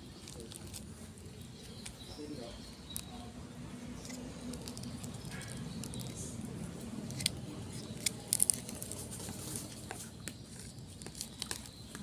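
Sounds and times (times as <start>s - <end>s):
sharp clicks and crackles: 4.0s - 6.3s, 7.0s - 12.0s.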